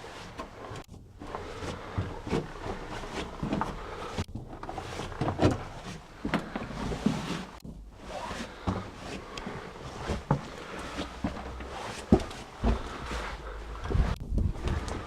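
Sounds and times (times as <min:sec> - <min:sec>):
dull thuds and knocks: 0:11.2 - 0:15.0.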